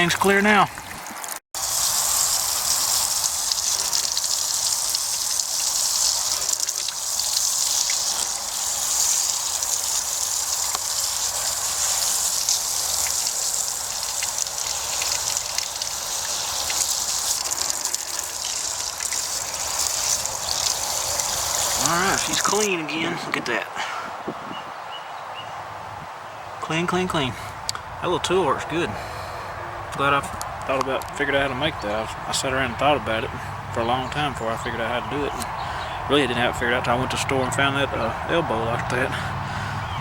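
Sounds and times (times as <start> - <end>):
water spraying from hose: 0.7 - 22.7.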